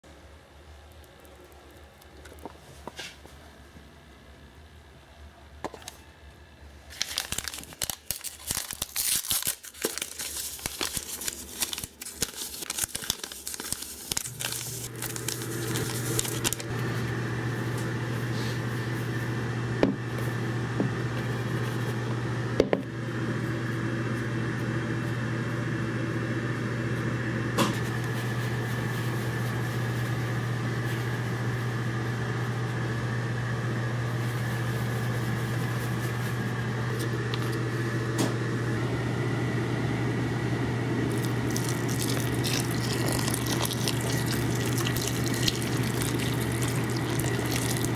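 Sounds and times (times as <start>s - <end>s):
packaging crinkling and tearing: 6.9s - 16.9s, 27.8s - 31.3s, 41.1s - 47.9s
steady machine hum: 9.6s - 47.9s.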